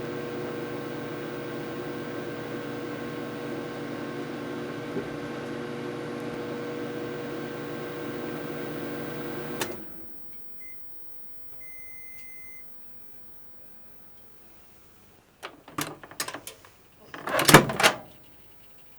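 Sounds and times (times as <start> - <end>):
microwave click: 0.0 - 10.1, 15.4 - 18.3
microwave oven humming: 0.0 - 10.9, 15.4 - 18.3
microwave beeps: 0.0 - 12.9, 15.4 - 18.1.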